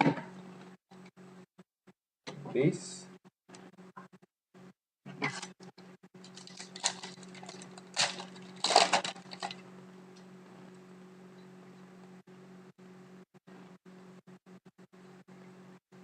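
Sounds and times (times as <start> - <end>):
steady low hum: 4.6 - 16.0.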